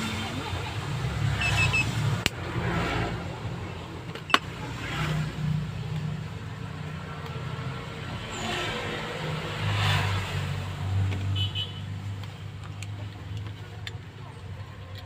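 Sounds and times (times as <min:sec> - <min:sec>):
vehicle engines running: 0:00.0 - 0:11.3.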